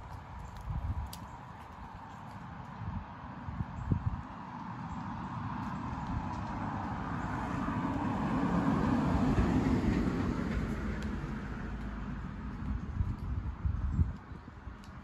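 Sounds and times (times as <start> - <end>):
vehicle passing by: 4.8 - 13.0.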